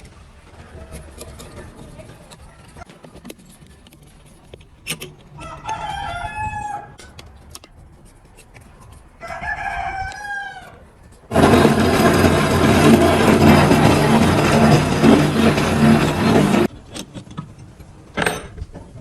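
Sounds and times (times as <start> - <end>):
rooster crowing: 5.4 - 7.1, 9.2 - 10.9.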